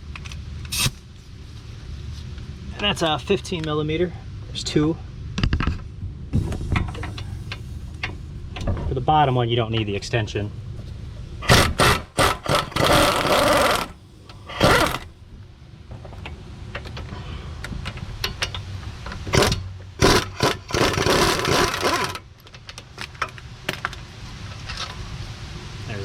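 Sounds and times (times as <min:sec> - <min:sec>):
power wrench bursts: 0:11.4 - 0:15.1, 0:19.3 - 0:22.2.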